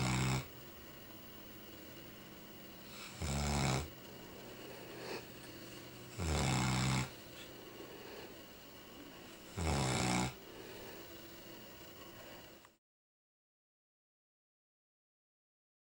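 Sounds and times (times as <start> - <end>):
dog snoring: 0.0 - 0.6, 2.8 - 4.0, 4.8 - 5.3, 6.1 - 8.3, 9.5 - 10.4
dog breathing quietly: 2.8 - 9.7.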